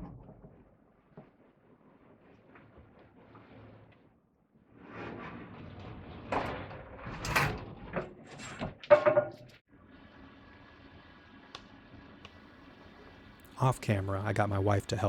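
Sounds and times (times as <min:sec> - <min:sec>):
scraping and creaking: 0:00.0 - 0:09.6.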